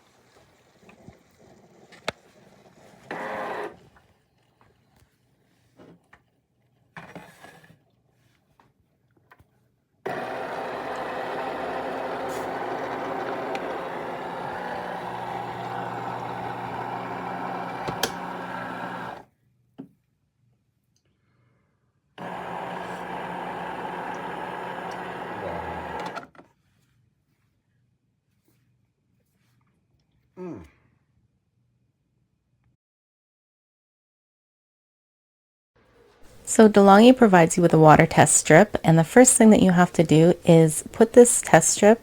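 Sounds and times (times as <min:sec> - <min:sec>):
small electric motor humming: 0:10.1 - 0:19.2, 0:22.2 - 0:26.2.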